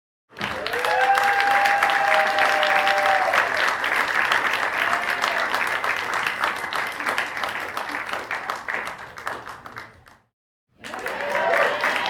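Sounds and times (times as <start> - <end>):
audience clapping: 0.3 - 12.0
cheering shouts: 0.5 - 3.7, 4.7 - 5.6, 10.8 - 12.0.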